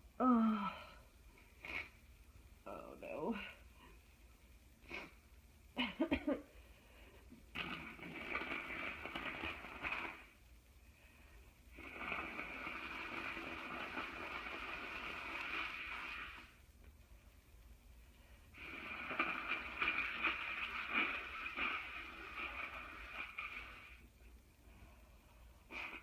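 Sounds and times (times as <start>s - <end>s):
woman blowing her nose: 1.6s - 2.0s, 4.8s - 5.2s, 7.6s - 10.2s, 11.7s - 16.6s, 18.6s - 24.0s, 25.6s - 26.0s.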